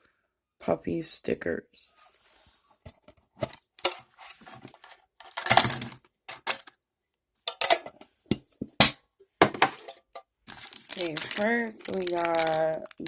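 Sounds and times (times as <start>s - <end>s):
metal tin clatter: 5.2s - 6.7s, 7.5s - 7.9s
metal tin clicks and knocks: 7.5s - 10.0s.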